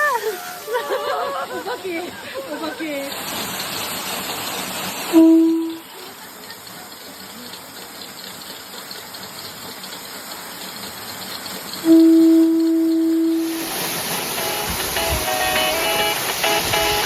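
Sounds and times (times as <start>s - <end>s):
waterfall rushing: 13.3s - 17.0s.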